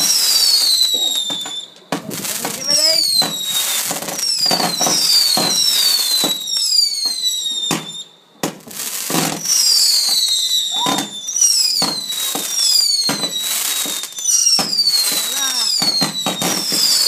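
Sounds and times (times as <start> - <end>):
firework bangs: 0.0 - 17.0
firework whistles falling in pitch: 0.0 - 17.0.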